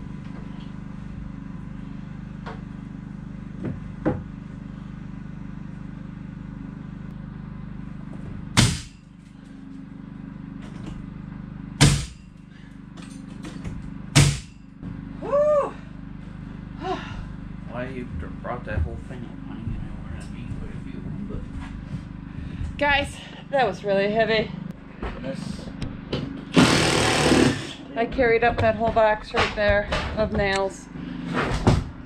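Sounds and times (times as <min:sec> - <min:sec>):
steady low hum: 0:00.0 - 0:32.0
loud sharp knocks: 0:08.6 - 0:09.0, 0:11.8 - 0:12.2, 0:14.1 - 0:14.6.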